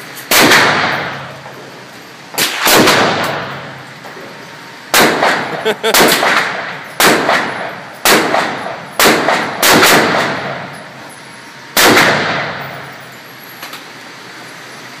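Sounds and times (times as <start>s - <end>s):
rifle shots with echo: 0.3s - 1.2s, 2.4s - 3.5s, 4.9s - 10.6s, 11.8s - 12.6s.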